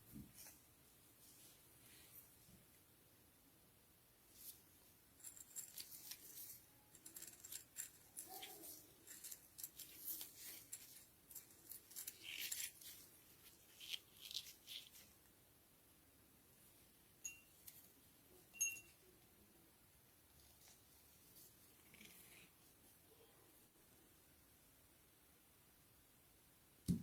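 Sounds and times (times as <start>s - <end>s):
small objects clicking and rustling: 5.2s - 13.0s.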